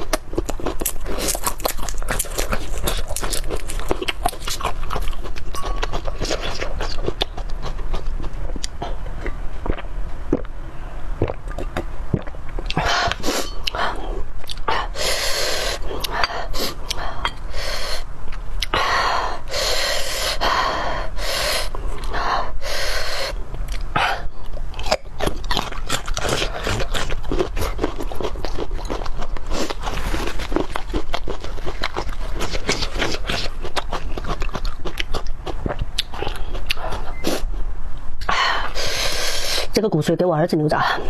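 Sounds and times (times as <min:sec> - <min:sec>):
wet chewing and lip-smacking: 0:00.0 - 0:10.6, 0:11.2 - 0:18.9, 0:23.2 - 0:37.6
sharp sucking in-breaths: 0:14.7 - 0:18.1.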